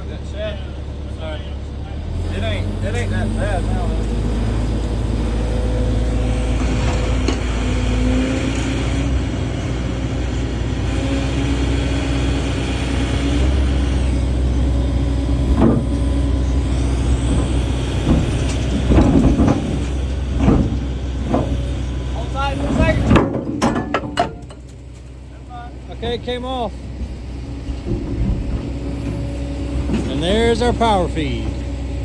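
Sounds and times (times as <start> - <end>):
diesel engine idling: 0.0 - 32.0
metal clanks and knocks: 6.2 - 8.7, 15.3 - 25.2, 26.0 - 31.8.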